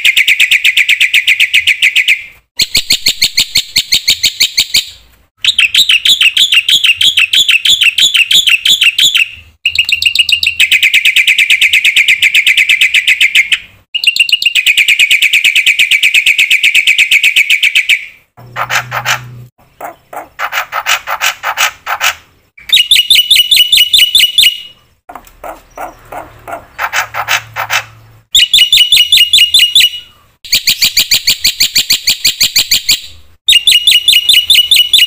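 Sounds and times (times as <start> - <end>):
starling singing chattering notes: 18.4 - 30.1.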